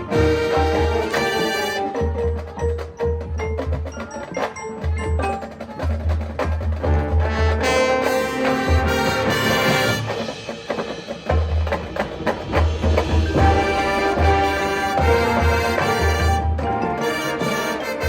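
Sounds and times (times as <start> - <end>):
brass playing: 0.0 - 2.4, 6.8 - 10.6, 13.0 - 18.0
mallet percussion: 0.0 - 18.0
wood-block strokes: 0.0 - 18.0
bass drum and timpani hits: 6.7 - 16.7.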